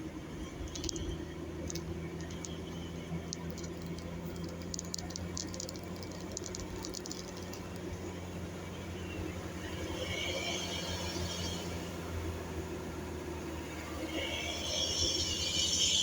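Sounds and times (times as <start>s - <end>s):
bus engine humming: 0.0s - 16.0s
light clicks: 0.6s - 7.9s.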